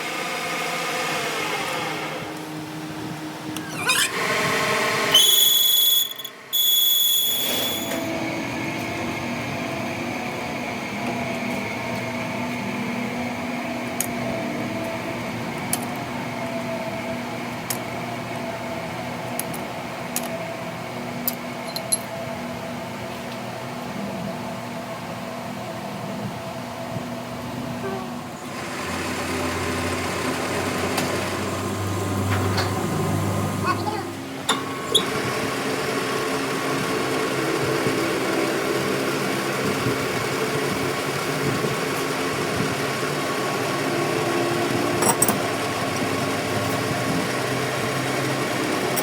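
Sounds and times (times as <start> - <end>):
workshop machine humming: 0.0 - 49.0
high-pitched whine: 3.5 - 8.7.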